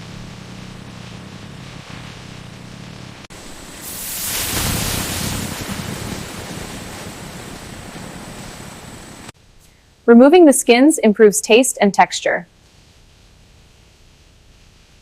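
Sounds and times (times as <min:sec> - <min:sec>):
rushing noise: 0:00.0 - 0:09.4.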